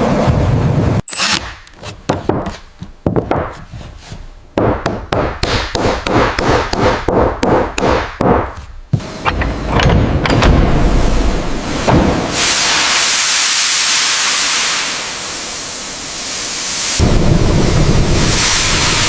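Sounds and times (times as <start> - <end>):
sharp knocks: 1.4 - 3.7, 4.6 - 10.8.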